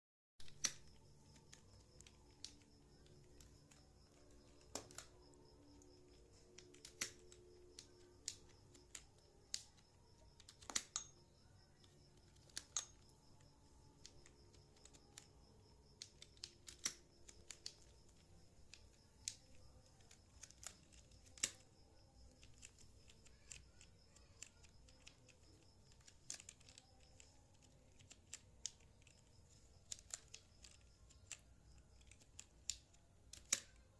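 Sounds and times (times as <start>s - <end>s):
slow keyboard key clicks: 0.4s - 11.2s, 12.1s - 33.9s
faint steady hum: 0.4s - 33.9s.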